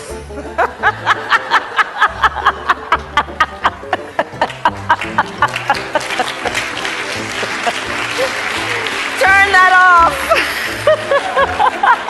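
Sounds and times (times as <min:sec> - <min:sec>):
applause-like noise: 0:04.4 - 0:12.0.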